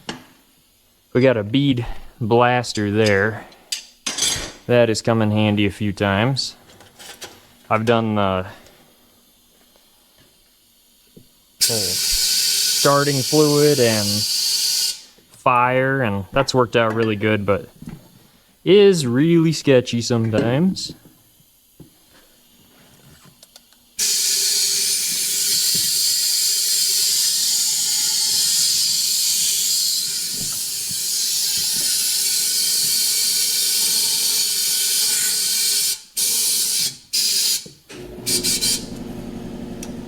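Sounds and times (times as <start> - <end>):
compressed air hissing: 11.6 - 15.2, 24.0 - 39.2.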